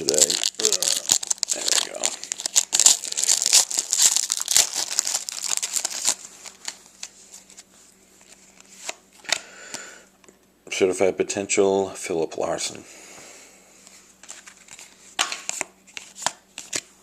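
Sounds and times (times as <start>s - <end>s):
wrapper crinkling and tearing: 0.0s - 7.6s.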